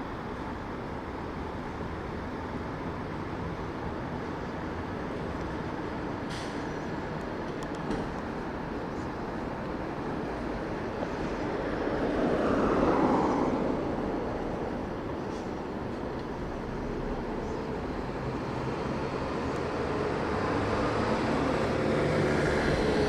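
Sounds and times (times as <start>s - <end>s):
city street traffic: 0.0s - 23.0s
vehicle passing close by: 11.4s - 14.8s, 18.0s - 23.0s.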